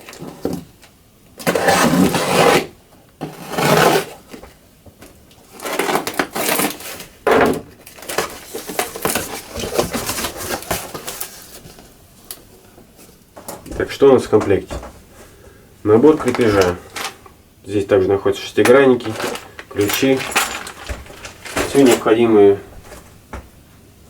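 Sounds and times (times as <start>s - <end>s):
box packing rubbing and scraping: 1.4s - 4.3s, 8.0s - 11.9s, 16.1s - 17.3s, 18.9s - 23.2s
packing rustling: 7.8s - 12.0s, 13.1s - 17.4s, 18.6s - 23.5s.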